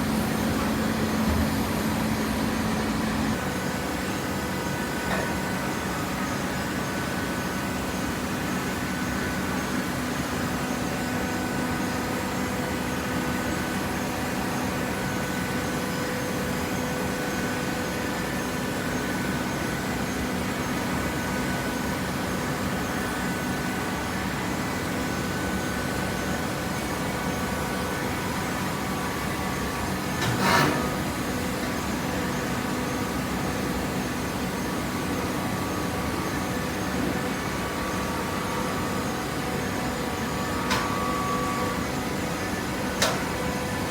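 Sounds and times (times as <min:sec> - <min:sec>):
machine hum: 0:00.0 - 0:03.7.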